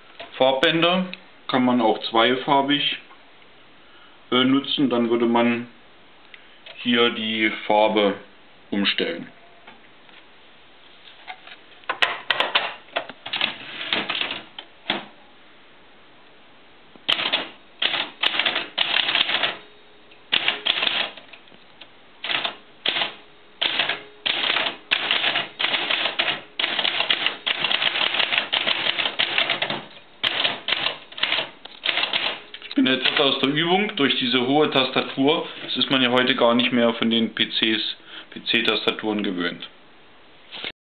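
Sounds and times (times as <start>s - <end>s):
manual typewriter keystrokes: 12.3s - 15.1s, 17.1s - 19.6s, 20.3s - 21.4s, 22.2s - 33.4s.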